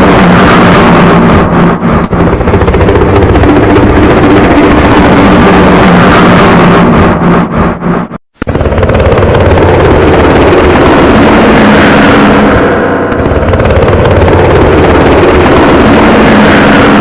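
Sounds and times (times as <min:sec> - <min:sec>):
helicopter rotor chop: 0:00.0 - 0:17.0.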